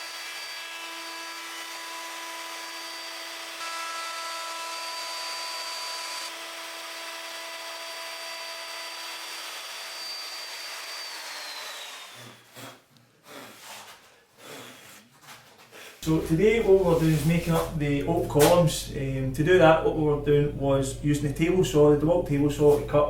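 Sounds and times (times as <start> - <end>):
router whining: 0.0 - 12.6.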